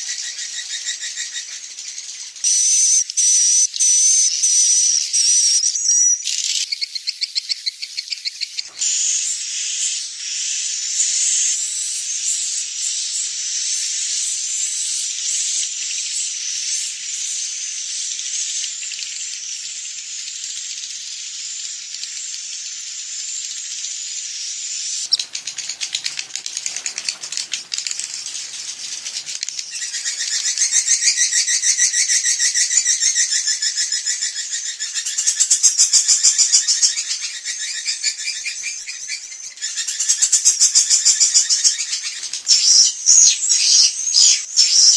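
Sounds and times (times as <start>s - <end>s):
swiftlets twittering: 17.6s - 44.9s.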